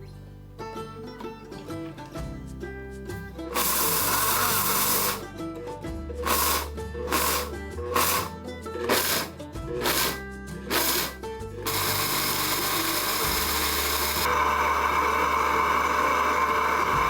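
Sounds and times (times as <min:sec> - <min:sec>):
background music with a beat: 0:01.6 - 0:14.3
blender motor running: 0:03.5 - 0:05.2, 0:06.2 - 0:17.0.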